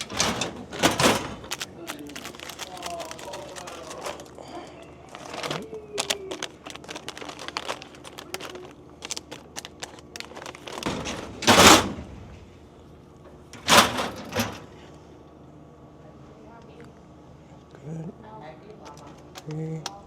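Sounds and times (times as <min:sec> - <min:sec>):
packages clicking and knocking: 0:00.0 - 0:12.2.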